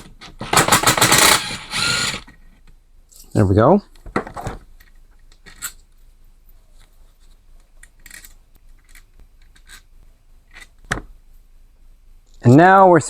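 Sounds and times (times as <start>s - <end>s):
tools and parts handled: 4.0s - 9.9s.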